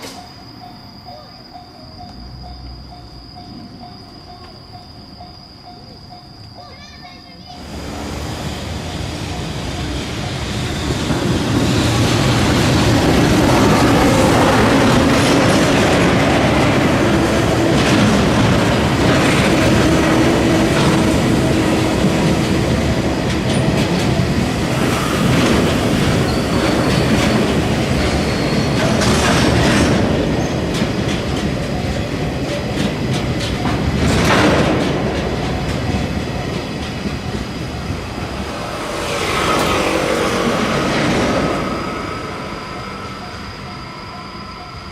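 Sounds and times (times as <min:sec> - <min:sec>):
train rumble: 0:00.0 - 0:44.9
wheel squeal: 0:07.5 - 0:34.6
wheels clacking over rail joints: 0:07.6 - 0:41.7.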